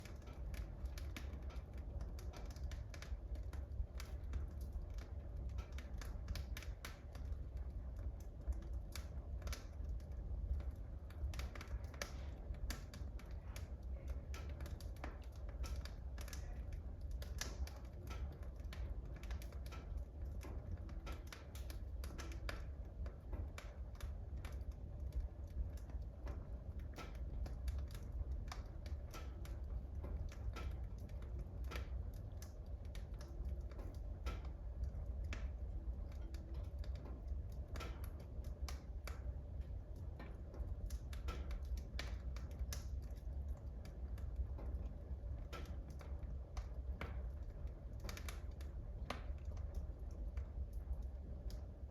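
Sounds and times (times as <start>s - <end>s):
wood fire crackling and popping: 0.0s - 51.9s.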